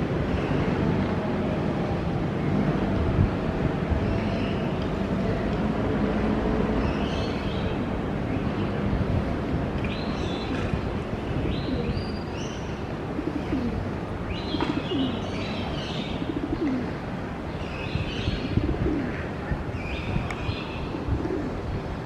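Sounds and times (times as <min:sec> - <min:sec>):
pigeons cooing: 0:11.4 - 0:12.1, 0:13.0 - 0:15.4, 0:16.1 - 0:17.0, 0:18.4 - 0:19.2, 0:20.9 - 0:21.6.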